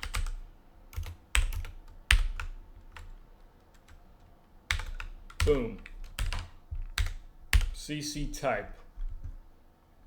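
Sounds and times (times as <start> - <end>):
computer keyboard typing: 0.0 - 7.8.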